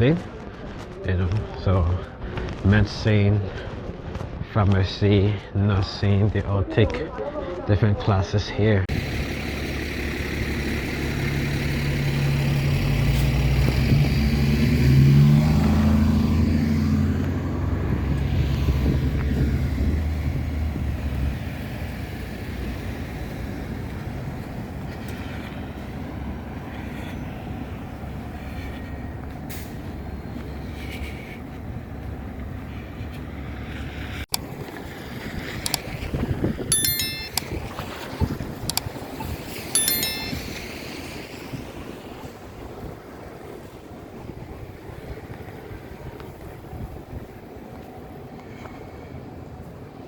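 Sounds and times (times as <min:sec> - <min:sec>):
street traffic: 0:00.0 - 0:50.0
heavy vehicle engine passing: 0:08.9 - 0:31.1.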